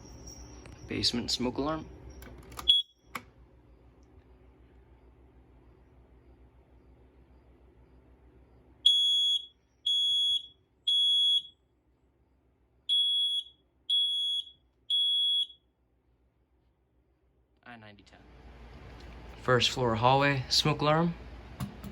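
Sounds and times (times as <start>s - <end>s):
smoke alarm beeps: 0.0s - 3.2s, 8.8s - 11.6s, 12.9s - 15.7s.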